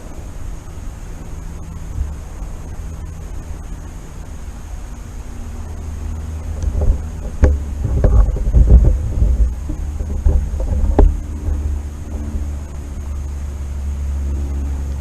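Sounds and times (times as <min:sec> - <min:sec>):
wind rumbling on microphone: 0:00.0 - 0:15.0
knocks and bumps: 0:06.6 - 0:12.2.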